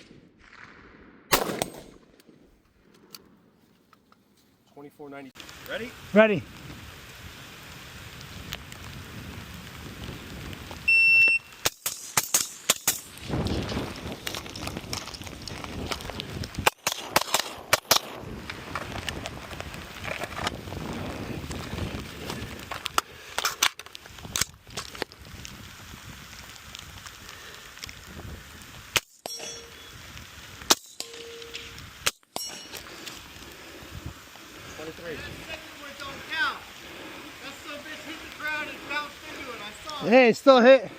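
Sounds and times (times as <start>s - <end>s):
gunshots in quick strings: 0.4s - 2.2s
bullet hitting steel target ping: 1.3s - 2.1s, 29.2s - 29.9s
rain hissing: 4.6s - 40.9s
shot timer beep: 10.9s - 11.5s.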